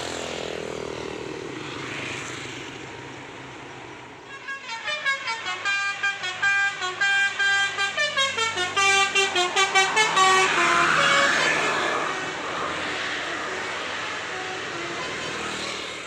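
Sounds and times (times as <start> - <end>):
musical air horn melody: 4.3 - 16.0
rush of noise: 9.3 - 16.0.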